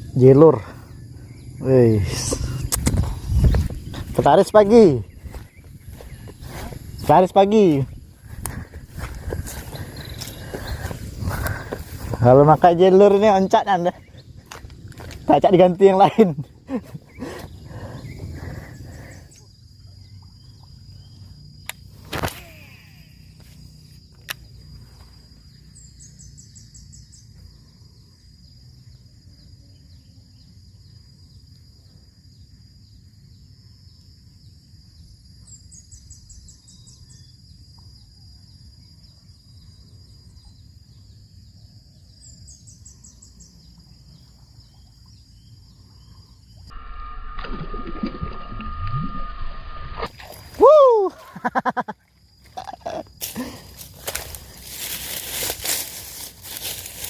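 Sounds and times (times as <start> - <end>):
high insect drone: 0.0 - 57.0
low rumble: 46.7 - 50.1
bird descending trill: 46.7 - 51.0.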